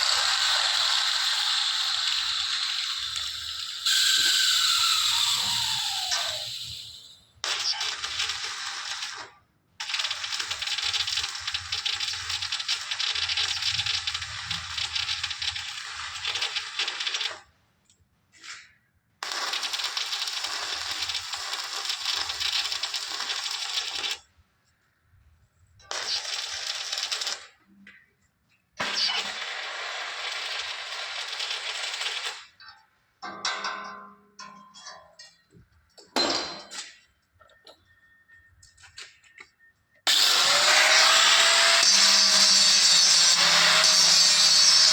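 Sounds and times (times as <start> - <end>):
arc welding crackle: 0.0 - 17.4, 19.2 - 24.2, 25.9 - 27.5, 28.8 - 32.5, 40.1 - 44.9.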